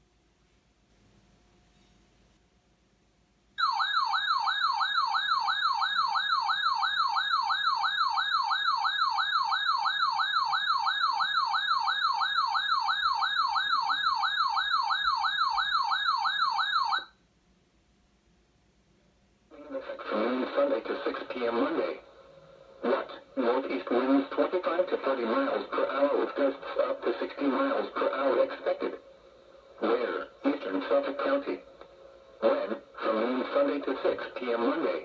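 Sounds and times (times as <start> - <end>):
electronic siren yelping: 3.6 - 17.1.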